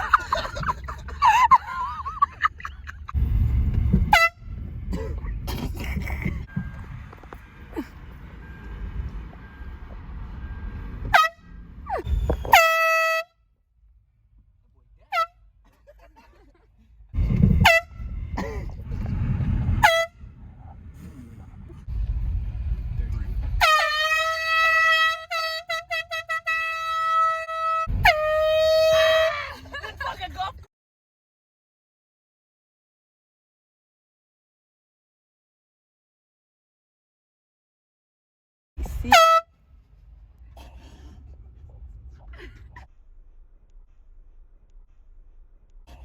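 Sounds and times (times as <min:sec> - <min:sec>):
moving car rumble: 0:00.0 - 0:30.7, 0:38.8 - 0:46.0
air horn blasting: 0:04.0 - 0:04.7, 0:10.4 - 0:13.4, 0:15.1 - 0:15.4, 0:17.5 - 0:18.4, 0:19.2 - 0:20.4, 0:23.5 - 0:29.6, 0:38.9 - 0:39.6
low thump: 0:12.1 - 0:12.6.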